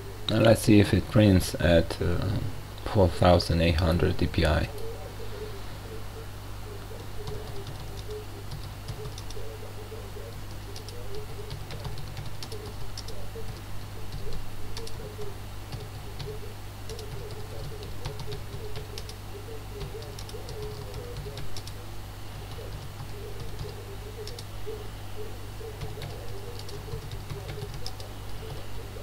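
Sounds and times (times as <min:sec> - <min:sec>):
steady low hum: 0:00.0 - 0:29.0
keyboard typing clicks: 0:07.0 - 0:09.4, 0:10.4 - 0:19.2, 0:19.8 - 0:21.8, 0:22.4 - 0:24.5, 0:25.8 - 0:28.6.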